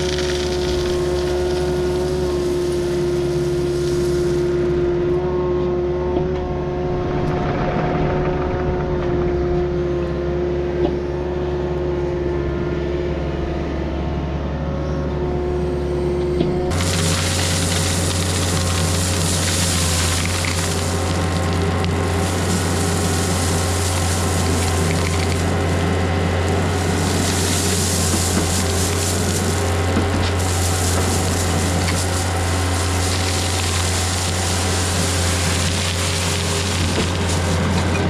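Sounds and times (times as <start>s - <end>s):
diesel engine running: 0.0s - 38.0s
rushing hiss: 26.6s - 37.8s.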